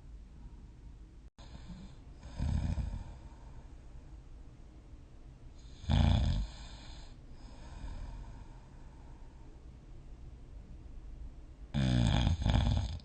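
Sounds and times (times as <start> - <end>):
person snoring: 1.4 - 3.6, 5.6 - 8.7, 11.8 - 13.0.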